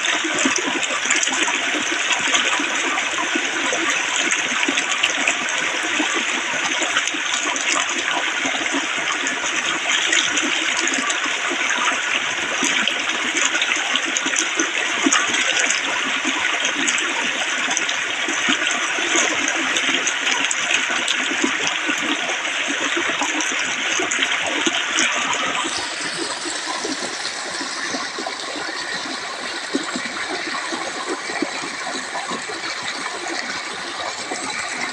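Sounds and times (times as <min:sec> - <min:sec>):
water rushing and splashing: 0:20.0 - 0:34.9.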